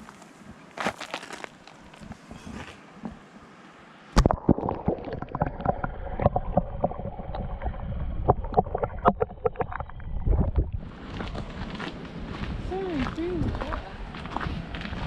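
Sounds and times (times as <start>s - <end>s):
low rumble: 4.2s - 12.8s.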